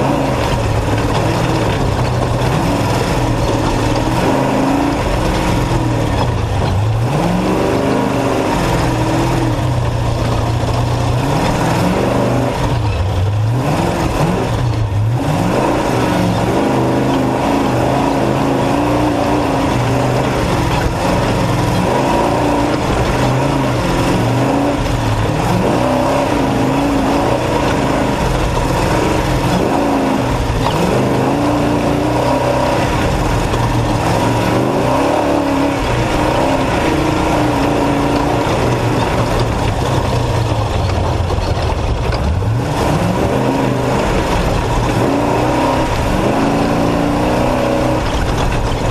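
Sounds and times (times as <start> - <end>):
constant loud noise: 0.0 - 48.9
truck engine revving: 0.0 - 48.9.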